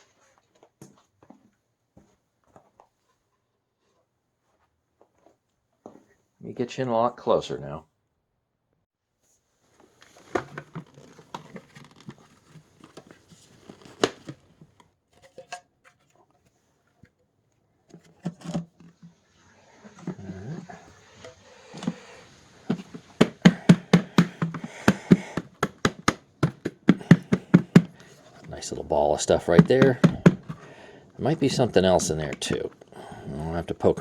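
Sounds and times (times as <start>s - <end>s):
plastic parts clicking and knocking: 10.0s - 16.0s, 22.7s - 32.9s.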